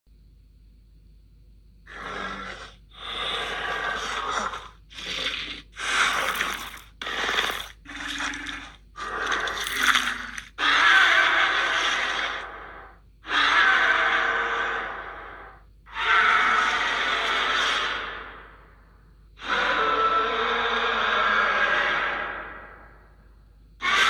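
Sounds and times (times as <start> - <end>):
creature breath-like bursts: 1.9 - 13.0.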